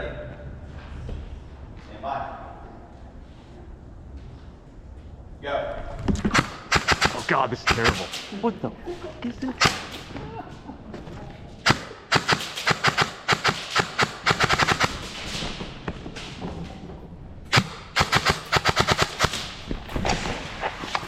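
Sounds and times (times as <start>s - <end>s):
airsoft guns firing: 6.2s - 8.5s, 9.5s - 10.1s, 11.6s - 15.7s, 17.5s - 21.0s.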